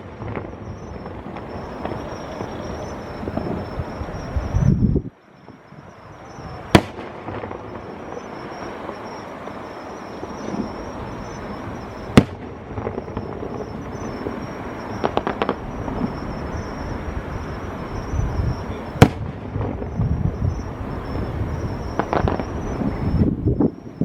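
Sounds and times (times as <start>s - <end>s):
continuous low noise: 0.0s - 24.0s
fireworks bangs: 0.0s - 24.0s
fireworks crackling pops: 0.0s - 24.0s.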